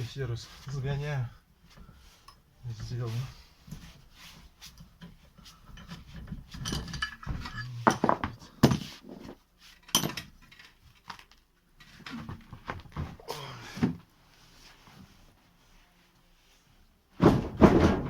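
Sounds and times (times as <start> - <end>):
metal tools clinking: 5.8 - 8.9, 9.7 - 10.8
sharp knocks: 17.2 - 18.0.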